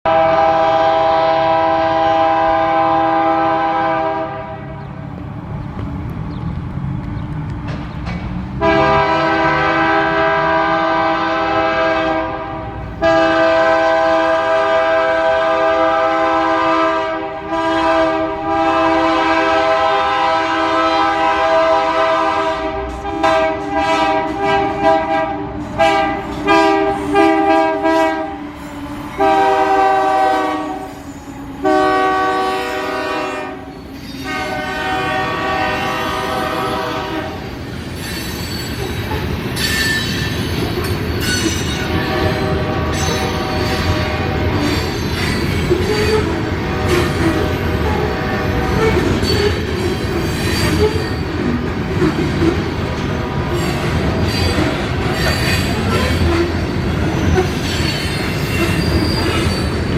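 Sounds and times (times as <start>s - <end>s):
locomotive air horn blasts: 0.0s - 4.8s, 8.6s - 28.4s, 29.2s - 37.6s, 41.9s - 44.6s, 45.7s - 49.6s
locomotive engine rumble: 2.4s - 20.1s.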